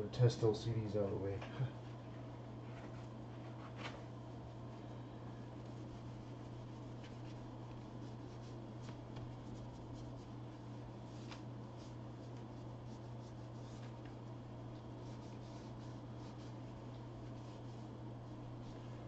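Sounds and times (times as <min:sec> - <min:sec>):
steady low hum: 0:00.0 - 0:19.0
scratchy rubbing on workbench: 0:14.8 - 0:17.9.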